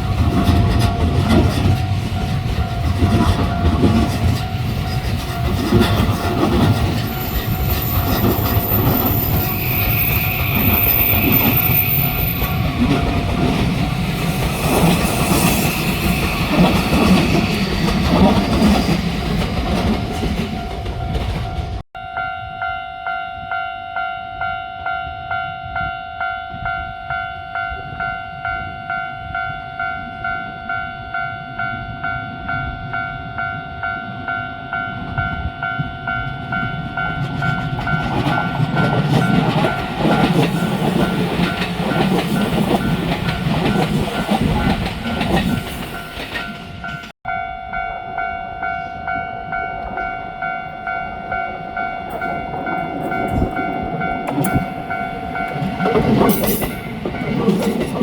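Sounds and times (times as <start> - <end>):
train wheels clattering on rails: 0.0 - 21.8, 35.0 - 47.1, 52.1 - 58.0
high steady tone: 1.7 - 18.1, 45.7 - 57.3.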